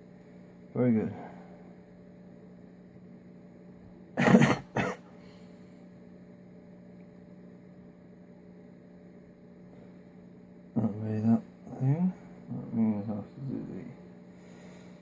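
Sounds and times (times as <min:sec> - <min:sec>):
electrical mains hum: 0:00.0 - 0:15.0
man coughing: 0:04.2 - 0:05.1.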